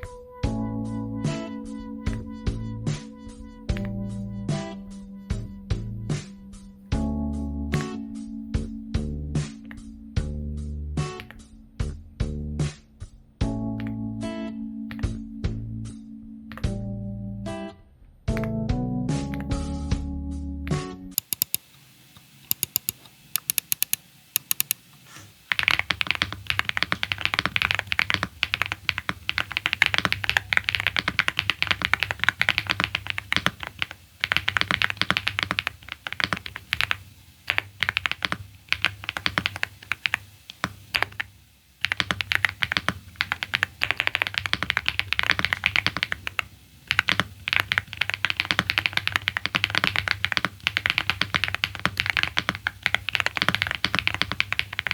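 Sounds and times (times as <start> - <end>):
typing on mechanical keyboard: 21.2 - 21.6, 22.5 - 24.8, 25.5 - 54.9.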